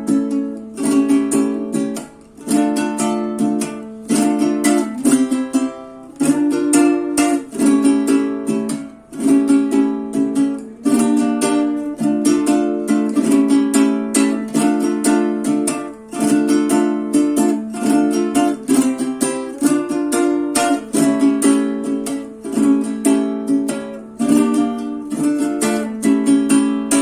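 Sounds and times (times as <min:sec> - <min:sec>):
small guitar strummed: 0:00.0 - 0:27.0.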